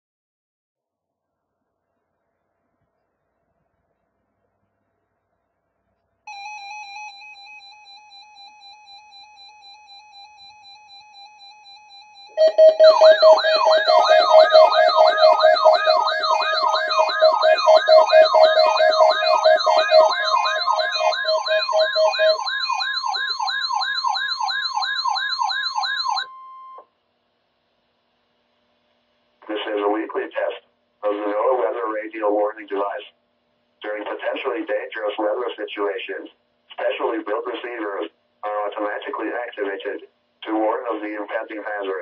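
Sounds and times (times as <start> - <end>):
loud warbling siren-like alarm: 11.9 - 26.6.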